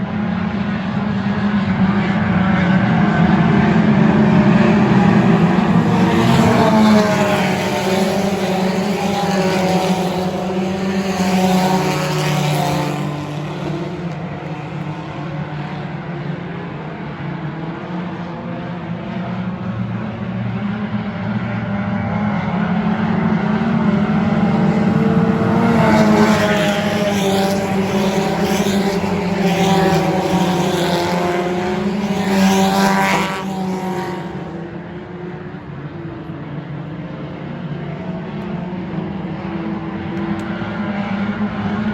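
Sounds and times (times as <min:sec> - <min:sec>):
race car engines: 0:00.0 - 0:41.9.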